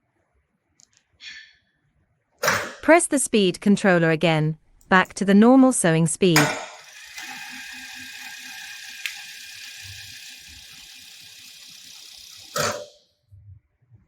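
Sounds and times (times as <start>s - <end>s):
industrial sewing machine stitching: 6.4s - 12.9s.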